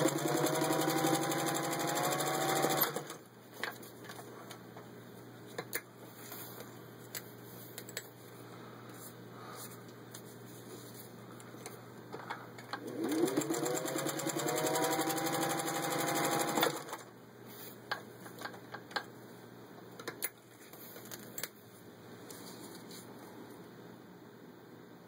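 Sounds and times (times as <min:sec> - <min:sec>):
sewing machine stitching: 0:00.0 - 0:03.2, 0:12.8 - 0:17.0.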